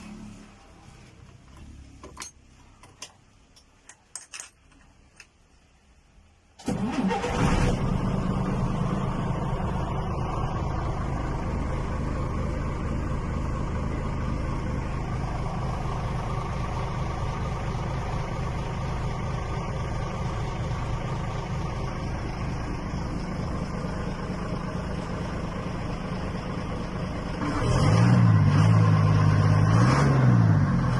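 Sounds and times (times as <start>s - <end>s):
diesel engine starting and idling: 6.4s - 30.9s
engine revving: 6.6s - 11.1s, 27.4s - 30.9s.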